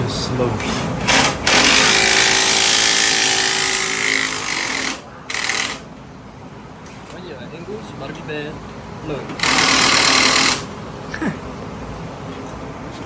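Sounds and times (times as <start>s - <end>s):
impact wrench running: 0.6s - 5.9s, 9.3s - 10.7s.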